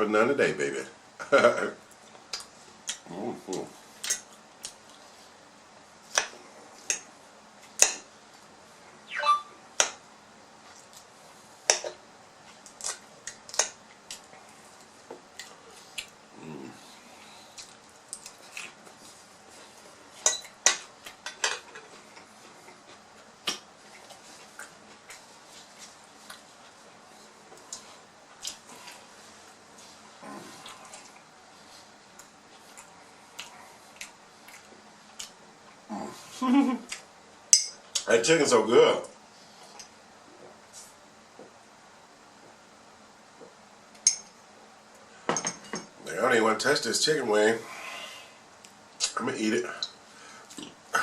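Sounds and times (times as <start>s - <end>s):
eating sounds: 29.9s - 31.3s, 32.1s - 37.1s
dishes and cutlery clinking: 45.3s - 46.0s.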